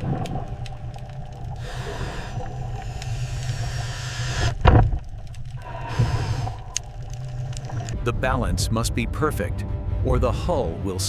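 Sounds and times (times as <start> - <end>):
deep steady rumble: 0.0 - 10.6
hiss: 1.5 - 4.6, 5.6 - 6.8.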